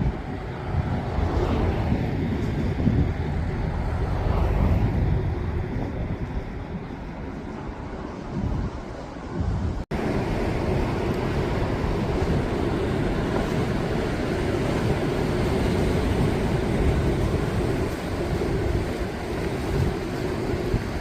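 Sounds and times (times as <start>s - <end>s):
waves breaking on shore: 0.0s - 21.0s
wind rumble on microphone: 0.0s - 21.0s.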